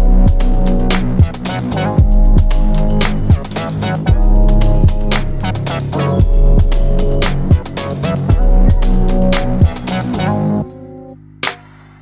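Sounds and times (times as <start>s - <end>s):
music with punchy kick drum: 0.0s - 10.4s.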